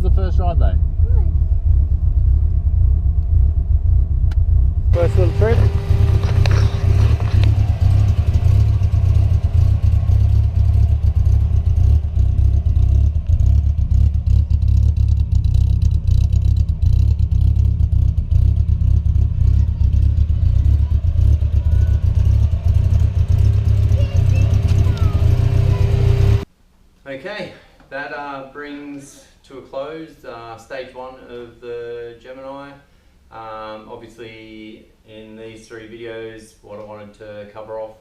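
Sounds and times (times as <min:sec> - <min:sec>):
car engine and road rumble: 0:00.0 - 0:26.5.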